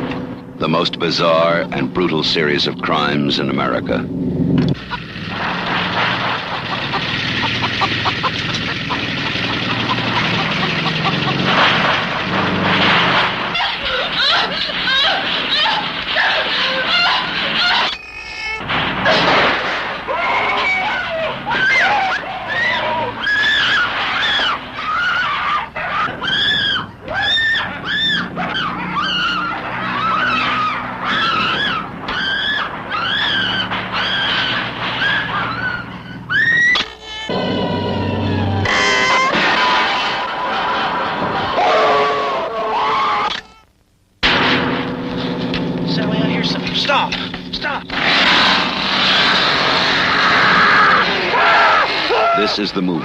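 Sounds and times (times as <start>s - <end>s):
small gasoline engine droning: 0.0s - 15.7s, 20.7s - 36.3s, 37.0s - 39.0s, 44.4s - 51.6s
shrill rising and falling cries: 13.4s - 18.6s, 20.0s - 43.7s, 48.1s - 53.0s.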